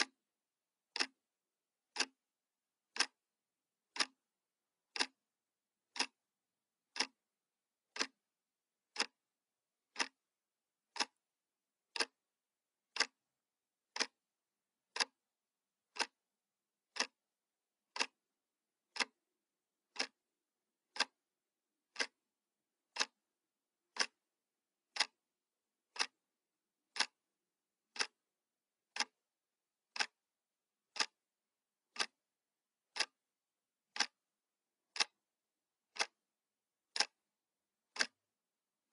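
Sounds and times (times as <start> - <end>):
clock ticking: 0.0 - 11.2, 11.8 - 38.9.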